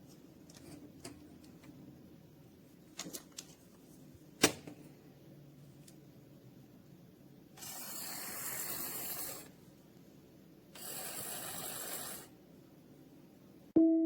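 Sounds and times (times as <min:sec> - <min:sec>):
toy blender sound effect: 0:07.6 - 0:09.5, 0:10.8 - 0:12.3.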